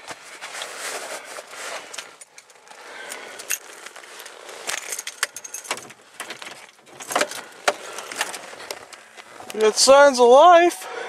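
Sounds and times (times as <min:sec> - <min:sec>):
keys jangling: 0:04.7 - 0:08.3.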